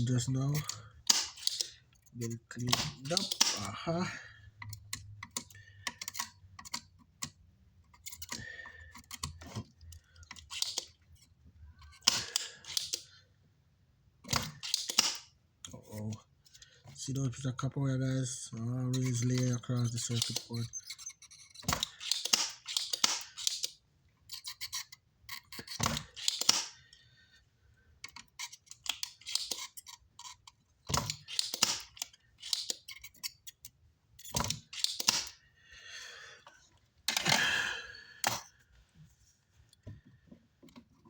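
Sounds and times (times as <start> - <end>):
tools clicking on circuit board: 0.5 - 3.7, 4.6 - 8.4, 10.2 - 11.0, 11.8 - 13.1, 14.2 - 15.3, 19.0 - 26.8, 28.0 - 35.4.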